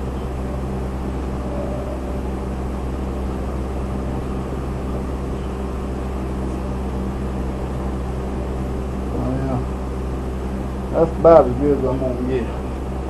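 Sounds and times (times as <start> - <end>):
fan whirring: 0.0 - 13.0
low electrical hum: 0.0 - 13.0.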